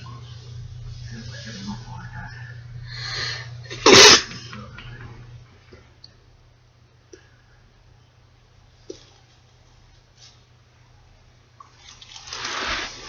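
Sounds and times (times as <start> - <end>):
person sneezing: 3.8 - 4.4.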